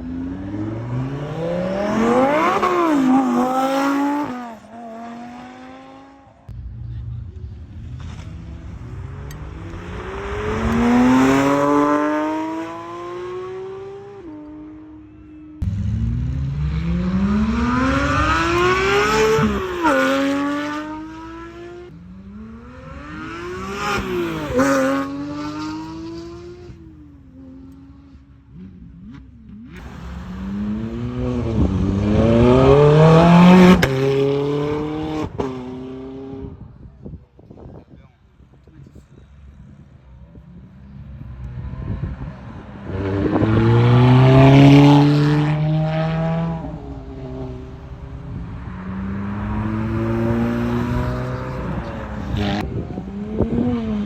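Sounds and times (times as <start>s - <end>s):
car engines accelerating hard: 0.0s - 54.0s
car passing by: 41.2s - 54.0s.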